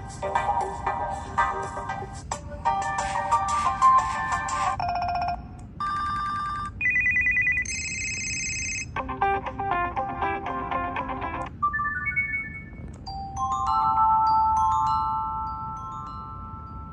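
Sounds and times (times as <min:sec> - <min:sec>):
phone ringtone melody: 0:02.6 - 0:09.1, 0:11.5 - 0:16.9
high electronic tones: 0:11.5 - 0:16.9
pulsing beeps: 0:11.6 - 0:12.9
buzzing trill: 0:11.6 - 0:16.9.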